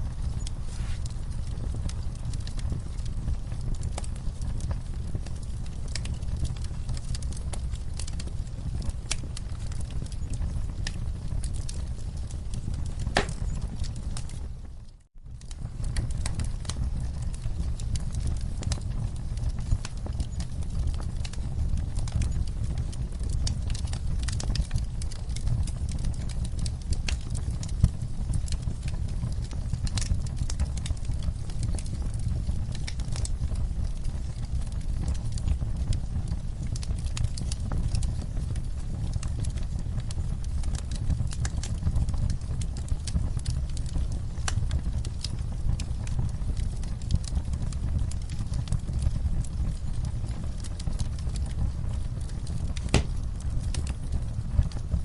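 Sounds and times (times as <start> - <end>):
fire pops and snaps: 0.0 - 55.0
low rumble of flames: 0.0 - 55.0
sharp fire pop: 13.1 - 13.6, 52.8 - 53.2.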